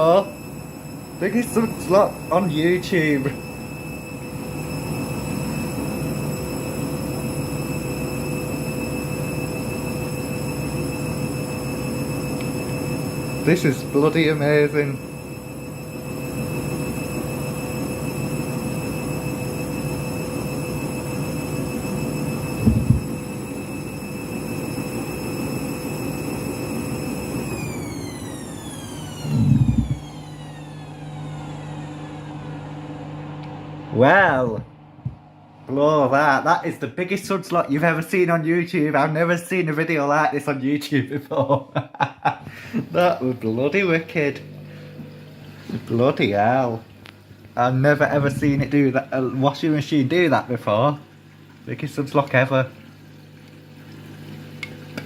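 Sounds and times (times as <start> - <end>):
washing machine rumble: 0.0 - 38.3, 41.1 - 55.0
washing machine motor whine: 0.0 - 55.0
steady low hum: 28.7 - 36.7.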